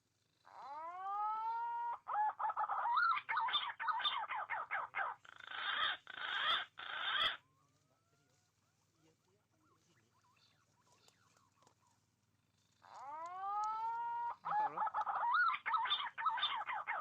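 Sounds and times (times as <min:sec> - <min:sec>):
pigeon whistling and rasping calls: 0:00.6 - 0:07.4, 0:13.0 - 0:17.0.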